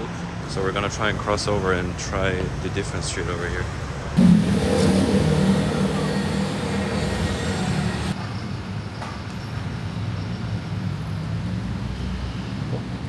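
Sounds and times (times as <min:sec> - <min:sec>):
road hiss: 0:00.0 - 0:08.4
traffic engine rumble: 0:00.0 - 0:09.0.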